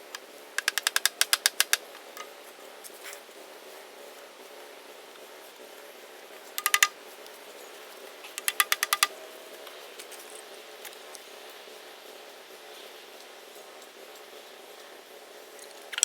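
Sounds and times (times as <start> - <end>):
pipe fittings knocked together: 6.6 - 6.9, 8.4 - 9.1.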